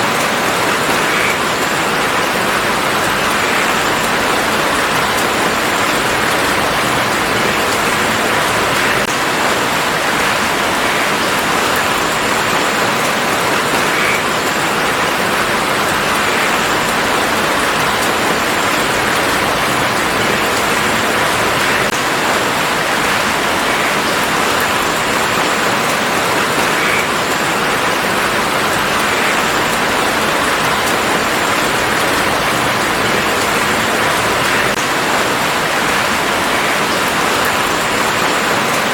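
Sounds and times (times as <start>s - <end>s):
heavy rain falling: 0.0s - 38.9s.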